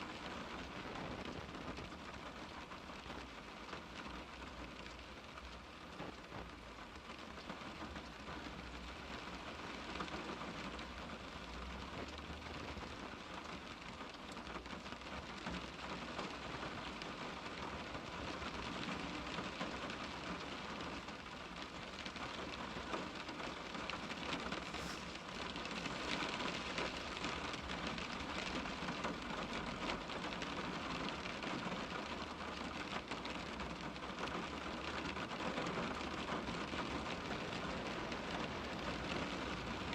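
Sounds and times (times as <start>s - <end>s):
rain on car window: 0.0s - 39.9s.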